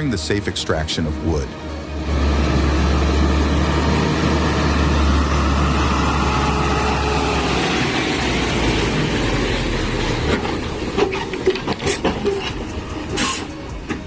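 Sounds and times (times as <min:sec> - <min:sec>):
truck engine drone: 0:00.0 - 0:14.0
knocks and rattles: 0:10.3 - 0:14.0.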